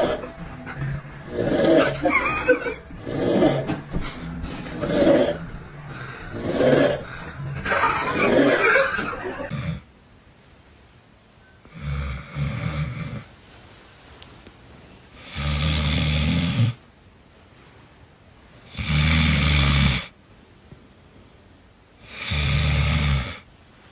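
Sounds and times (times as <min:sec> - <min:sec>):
person snoring loudly: 0:01.3 - 0:02.1, 0:03.0 - 0:03.7, 0:06.2 - 0:07.2, 0:09.5 - 0:09.9, 0:11.7 - 0:13.3, 0:15.2 - 0:16.8, 0:18.7 - 0:20.1, 0:22.0 - 0:23.5.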